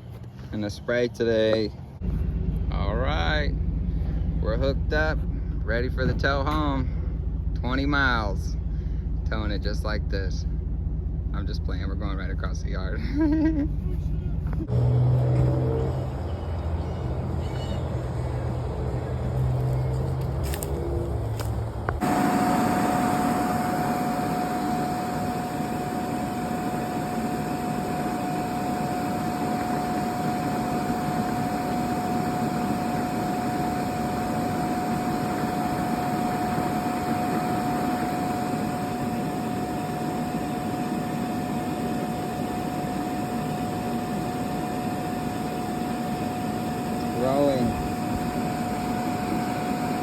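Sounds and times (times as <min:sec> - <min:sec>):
machine drone and hiss: 0:18.4 - 0:50.0.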